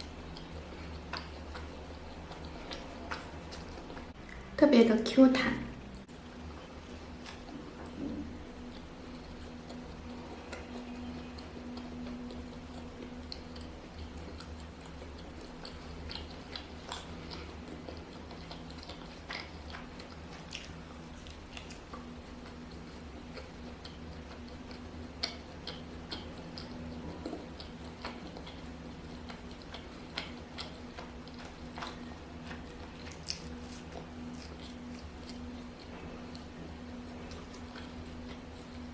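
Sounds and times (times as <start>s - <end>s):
wet chewing and mouth clicks: 0.0s - 4.5s, 5.9s - 38.9s
faint steady hum: 0.0s - 38.9s.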